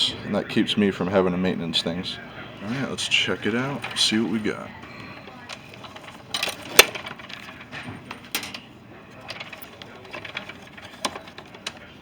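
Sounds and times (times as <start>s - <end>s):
soft rattling: 3.3s - 12.0s
vending machine clicks and knocks: 5.2s - 12.0s.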